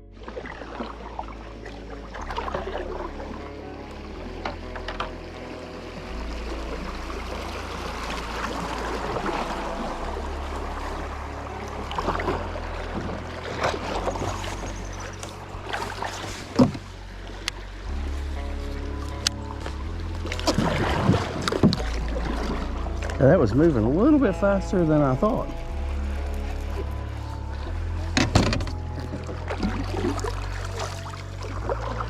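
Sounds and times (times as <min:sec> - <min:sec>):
background music with bass line: 0:00.0 - 0:32.0
water noise: 0:00.0 - 0:32.0
kayak paddle knocks and splashes: 0:00.2 - 0:23.3, 0:25.0 - 0:32.0.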